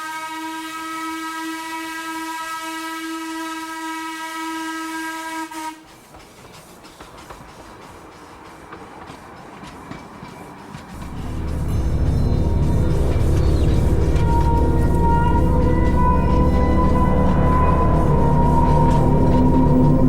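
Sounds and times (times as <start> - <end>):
hiss: 0.0 - 16.2
whistle-like electronic tone: 11.0 - 20.0.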